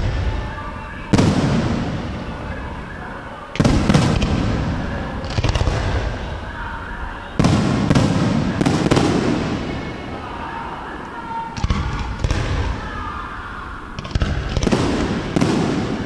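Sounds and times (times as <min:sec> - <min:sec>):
firework booms: 0:00.0 - 0:02.8, 0:03.6 - 0:06.5, 0:07.4 - 0:10.2, 0:11.6 - 0:13.1, 0:14.0 - 0:16.0
firework crackling: 0:00.0 - 0:16.0.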